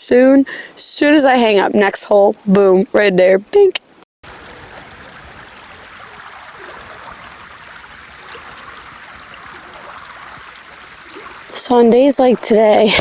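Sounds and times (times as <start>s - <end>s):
creek water running: 4.2s - 13.0s.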